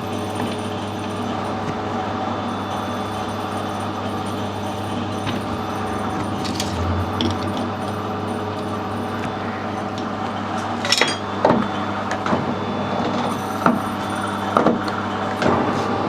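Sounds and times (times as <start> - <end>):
metal lathe humming: 0.9 - 10.5.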